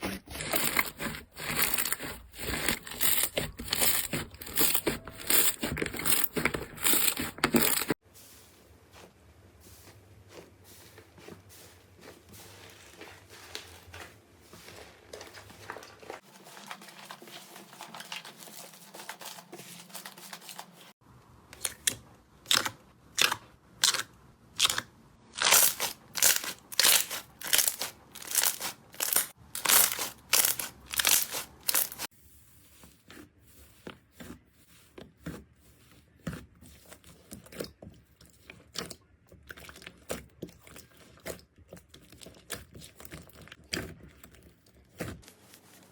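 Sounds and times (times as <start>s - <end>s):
crunchy slime squished by hand: 22.5s - 32.1s.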